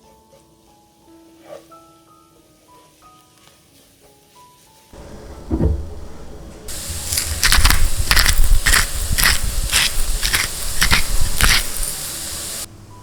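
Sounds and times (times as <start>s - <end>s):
steady hiss: 2.3s - 12.7s
single thump: 5.3s - 6.2s
rhythmic crunching strokes: 6.7s - 12.7s.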